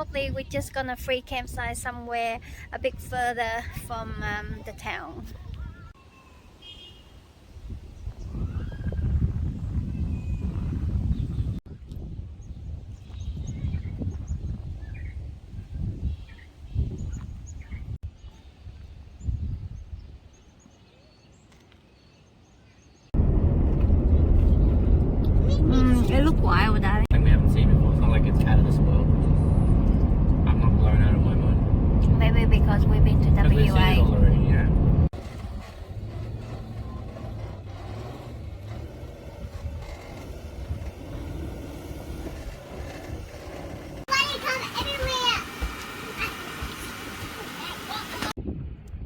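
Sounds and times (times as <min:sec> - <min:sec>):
wind buffeting microphone: 0:00.0 - 0:06.0, 0:07.4 - 0:20.6, 0:23.1 - 0:47.6, 0:48.2 - 0:49.0
faint high bird chirps: 0:05.6 - 0:07.2
vehicle road and engine rumble: 0:23.1 - 0:48.4.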